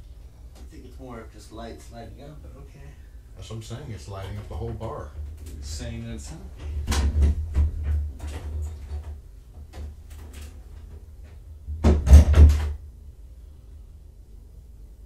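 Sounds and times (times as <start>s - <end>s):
knocks and clunks in a room: 4.1s - 13.0s.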